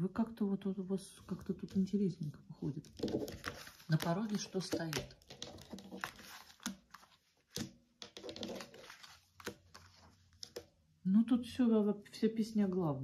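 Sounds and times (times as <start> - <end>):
cards rustling: 2.9 - 10.7.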